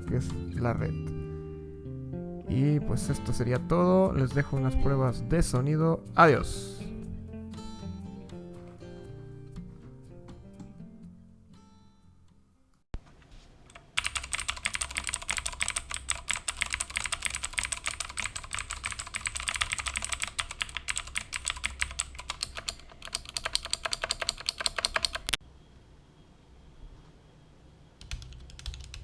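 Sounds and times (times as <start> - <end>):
fast typing on keyboard: 13.8 - 25.4, 28.0 - 29.0.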